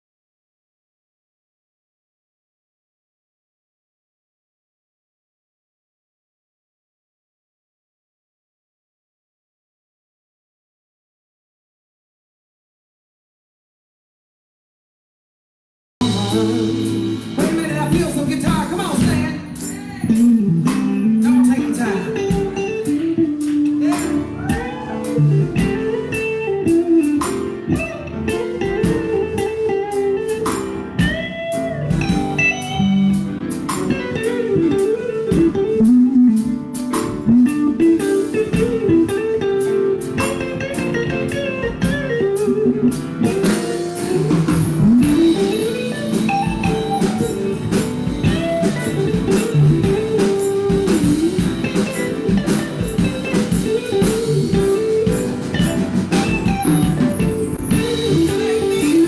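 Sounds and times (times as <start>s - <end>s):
steady drum beat: 16.0s - 29.6s, 30.3s - 35.8s, 36.4s - 39.1s, 41.7s - 59.0s
guitar: 16.0s - 59.0s.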